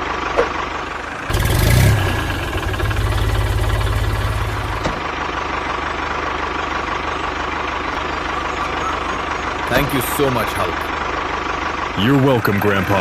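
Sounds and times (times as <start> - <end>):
tractor engine running: 0.0 - 13.0.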